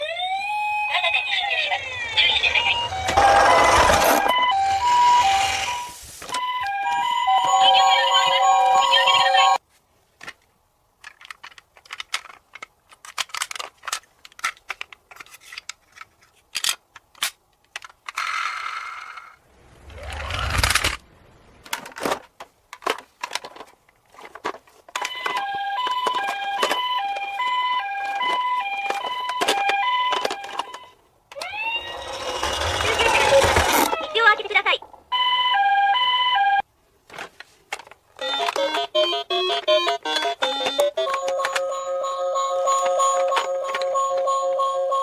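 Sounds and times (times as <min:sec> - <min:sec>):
electronic toy beeping tune: 0:00.9 - 0:09.6, 0:38.2 - 0:45.0
plastic toy cars clicking and rattling: 0:10.2 - 0:21.0, 0:21.7 - 0:35.0, 0:37.0 - 0:41.9.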